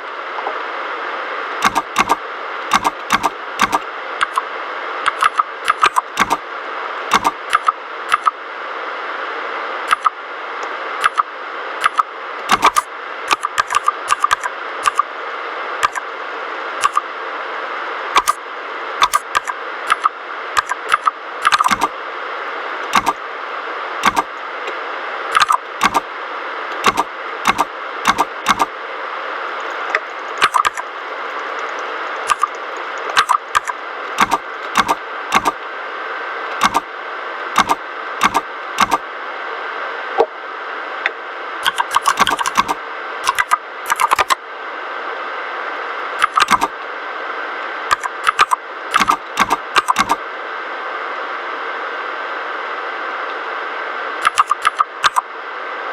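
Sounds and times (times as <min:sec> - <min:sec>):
mechanical keyboard typing: 0:01.6 - 0:04.4, 0:05.1 - 0:06.4, 0:07.1 - 0:08.4, 0:09.9 - 0:10.1, 0:11.0 - 0:15.0, 0:15.8 - 0:16.1, 0:16.8 - 0:17.0, 0:18.2 - 0:18.4, 0:19.0 - 0:21.9, 0:22.9 - 0:23.2, 0:24.0 - 0:24.3, 0:25.3 - 0:26.0, 0:26.8 - 0:28.7, 0:29.6 - 0:35.6, 0:36.6 - 0:36.8, 0:37.6 - 0:39.0, 0:41.6 - 0:44.4, 0:46.2 - 0:46.7, 0:47.9 - 0:50.2, 0:54.2 - 0:55.2.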